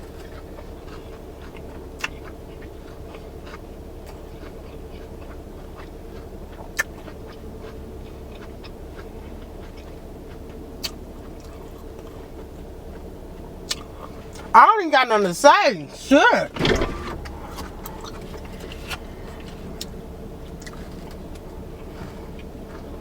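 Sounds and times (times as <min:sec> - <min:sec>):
quiet chewing: 0:00.0 - 0:14.5
steady low hum: 0:04.6 - 0:23.0.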